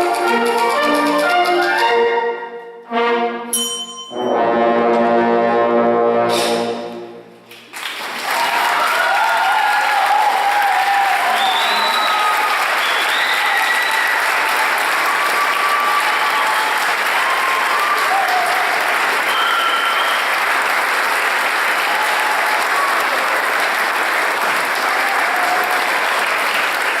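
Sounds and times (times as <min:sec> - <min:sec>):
audience applauding: 0:07.5 - 0:27.0.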